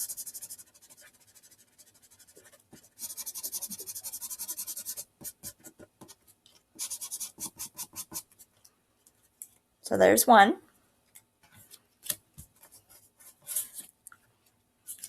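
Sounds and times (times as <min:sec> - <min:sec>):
marker scribbling on paper: 0:00.0 - 0:06.2, 0:06.8 - 0:08.5.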